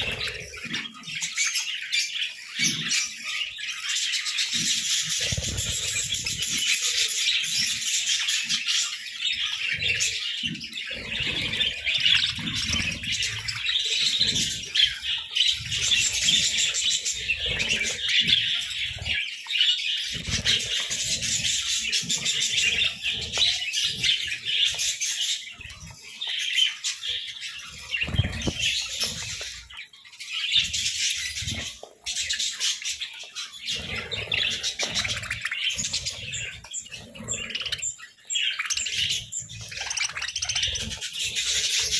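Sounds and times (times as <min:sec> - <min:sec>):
budgerigars chirping and chattering: 0:00.0 - 0:41.9.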